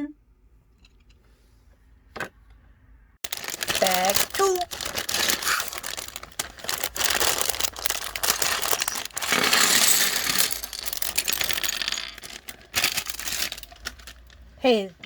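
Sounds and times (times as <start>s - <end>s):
plastic pieces clicking: 3.3s - 14.4s
rustling rattle: 3.3s - 15.0s.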